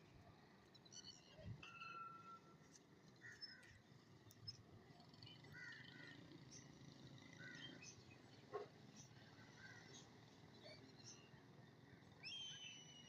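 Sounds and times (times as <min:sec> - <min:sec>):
faint bird chirps: 0:12.2 - 0:13.0.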